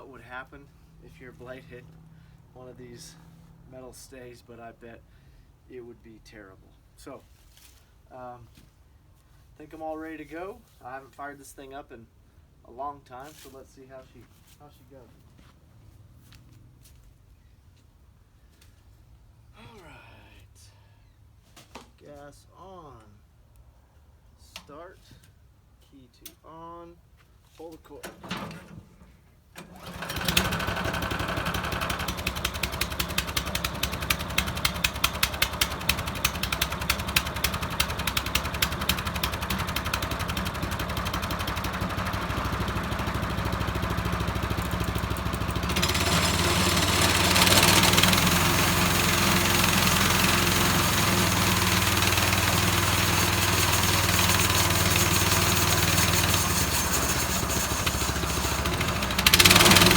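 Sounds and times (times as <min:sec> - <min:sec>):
small gasoline engine pull-started: 0:28.0 - 0:59.9.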